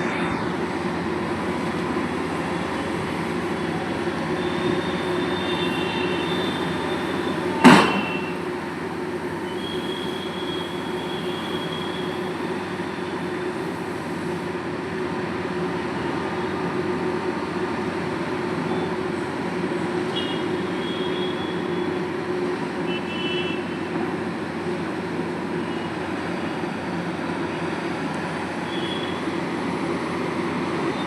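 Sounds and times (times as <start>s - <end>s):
heavy drilling machine running: 0.0s - 14.5s
faint high squeals: 3.6s - 13.6s
loud sharp metal clang: 7.5s - 8.4s.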